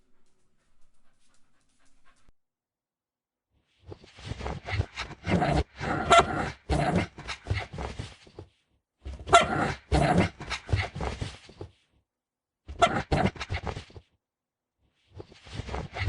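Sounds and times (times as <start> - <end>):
dog barking: 5.9 - 7.0, 9.2 - 10.4.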